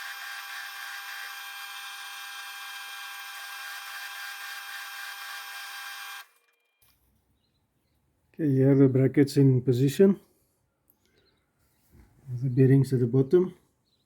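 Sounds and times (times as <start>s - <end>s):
power tool motor whining: 0.0s - 6.6s.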